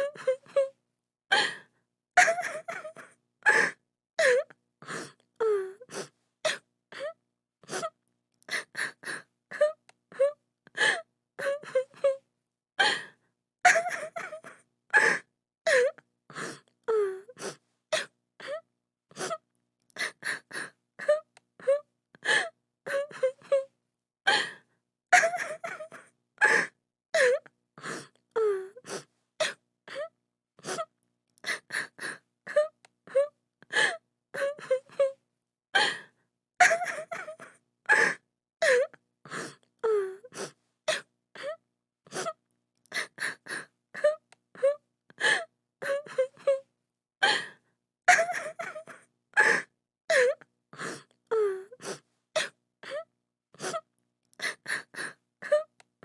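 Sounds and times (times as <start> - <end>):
woman sobbing and wailing: 0.0 - 0.7, 2.2 - 4.5, 8.6 - 12.2, 13.7 - 16.0, 20.0 - 23.7, 25.1 - 27.4, 31.5 - 35.2, 36.6 - 42.3, 43.0 - 46.6, 48.1 - 50.4.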